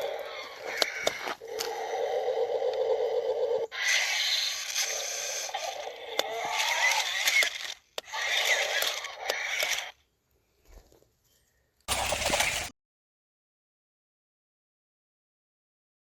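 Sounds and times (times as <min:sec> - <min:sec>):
toy plastic mechanism rattling: 0:04.5 - 0:10.0.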